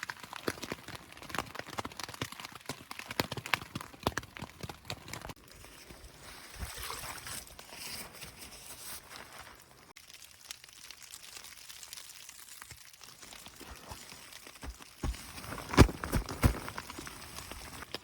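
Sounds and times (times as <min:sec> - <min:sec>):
rain and wind on a tent: 0:10.8 - 0:18.0.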